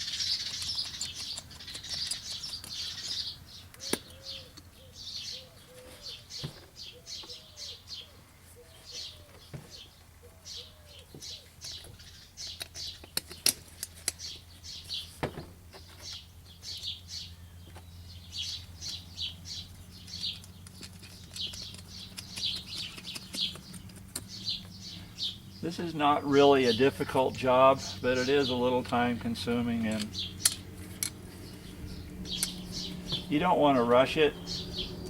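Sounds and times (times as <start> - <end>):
small birds chirping: 0.0 - 35.0
sharp clicks: 0.2 - 3.1, 20.1 - 24.8, 28.8 - 31.2, 32.2 - 33.2.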